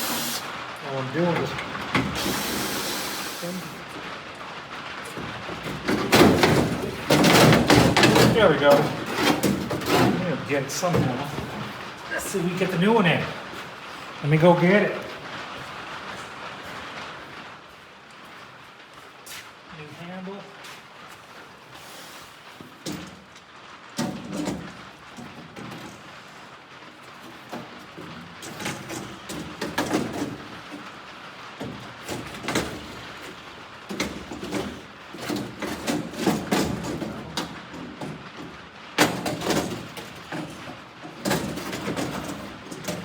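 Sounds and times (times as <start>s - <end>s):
metal clunks and rattles: 5.0s - 12.0s, 27.1s - 31.0s, 31.6s - 43.0s.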